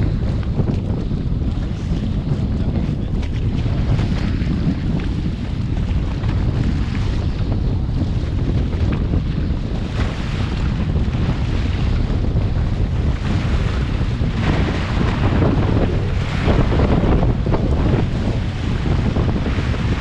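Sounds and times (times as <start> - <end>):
wind buffeting microphone: 0.0 - 20.0
water rushing past: 12.5 - 20.0.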